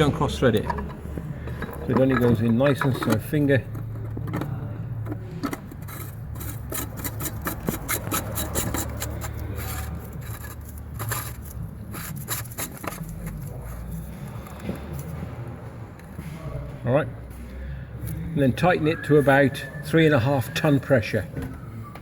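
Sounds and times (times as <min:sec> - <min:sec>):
screw cap threads scraping: 0:00.6 - 0:15.1.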